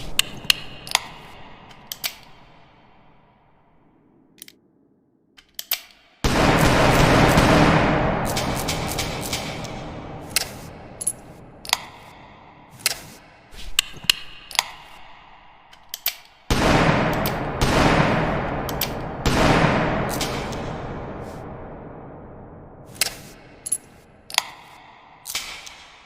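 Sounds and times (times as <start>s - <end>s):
sharp metallic clicks: 0.0s - 3.2s, 4.3s - 4.6s, 5.3s - 6.2s, 8.2s - 15.0s, 15.6s - 16.5s, 22.9s - 26.0s.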